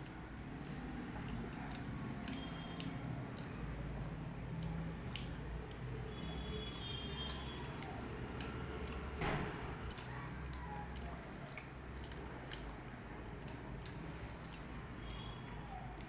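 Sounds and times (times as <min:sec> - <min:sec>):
wet chewing and squishing: 0:00.0 - 0:16.0.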